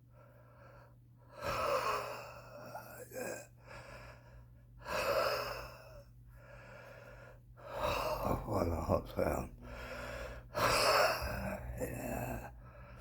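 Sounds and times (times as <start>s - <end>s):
loud gasping breaths: 9.6s - 13.0s
wheezy breathing: 9.6s - 13.0s.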